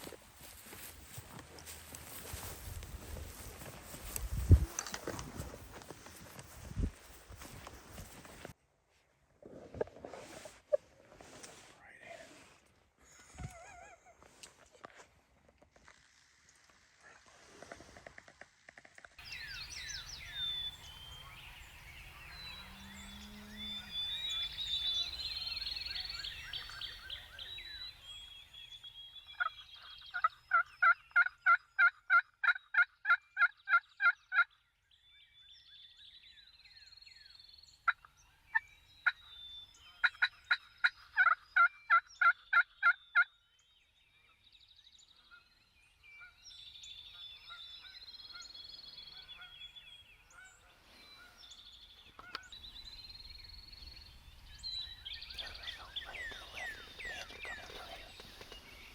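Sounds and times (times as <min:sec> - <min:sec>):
faint songbirds singing: 0:19.2 - 0:58.9.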